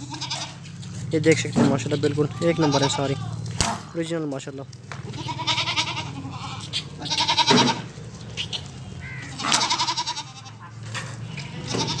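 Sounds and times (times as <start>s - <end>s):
goats bleating: 0.0s - 1.0s, 2.2s - 3.6s, 5.0s - 12.0s.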